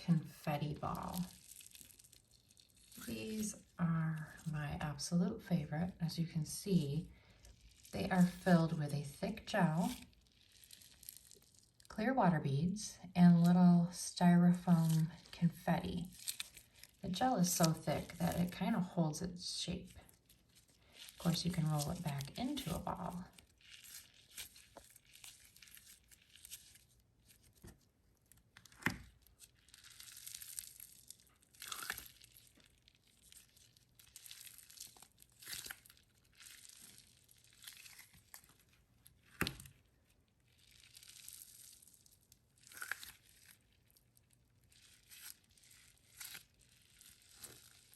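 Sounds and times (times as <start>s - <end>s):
stress ball rustling: 0.0s - 5.2s, 5.8s - 11.9s, 14.6s - 47.9s.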